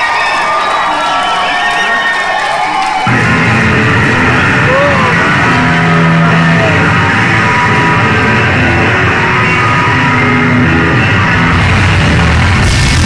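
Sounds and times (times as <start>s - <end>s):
loud live rock music: 3.0s - 13.0s.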